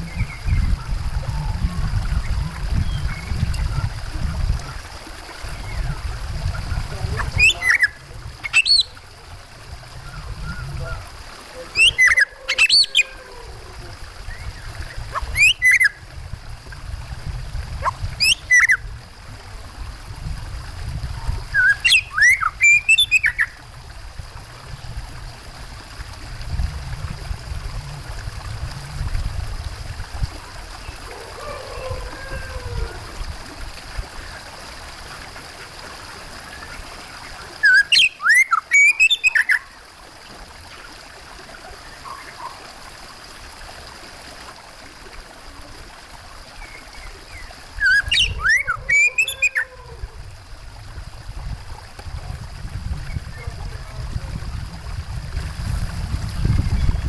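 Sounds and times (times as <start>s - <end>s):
running water: 0.0s - 57.0s
songbird singing sliding notes: 7.4s - 9.0s, 11.8s - 13.1s, 21.6s - 23.5s, 37.6s - 39.6s, 47.8s - 49.6s.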